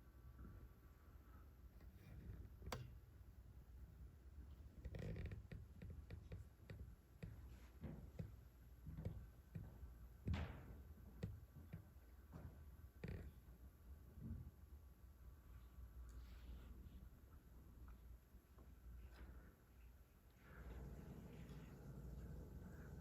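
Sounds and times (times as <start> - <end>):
faint clicks and knocks: 1.8 - 3.1, 4.5 - 14.6.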